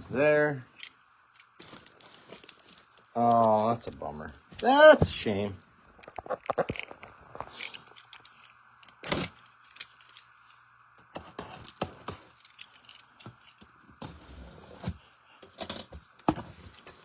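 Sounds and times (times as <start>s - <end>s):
faint steady hum: 0.0s - 17.0s
cardboard boxes tapping and scraping: 11.1s - 12.4s, 13.3s - 17.0s.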